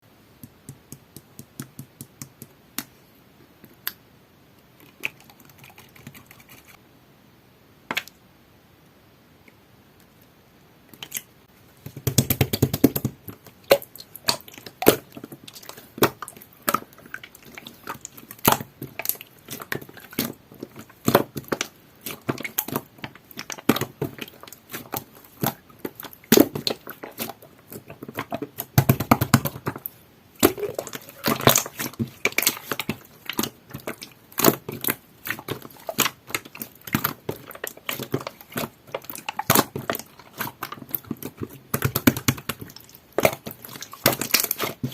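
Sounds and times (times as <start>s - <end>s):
slime squelching: 12.0s - 44.9s.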